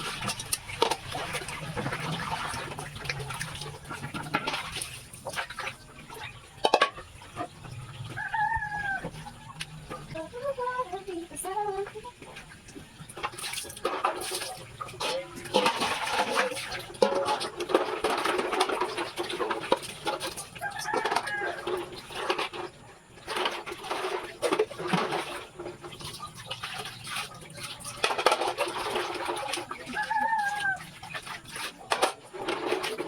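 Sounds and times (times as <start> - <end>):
chickens clucking: 0.0 - 33.0.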